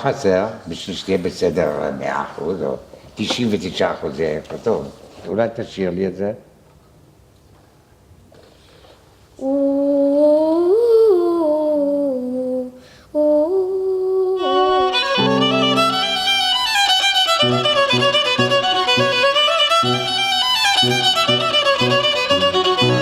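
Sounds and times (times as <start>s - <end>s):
solo violin playing: 14.4s - 23.0s.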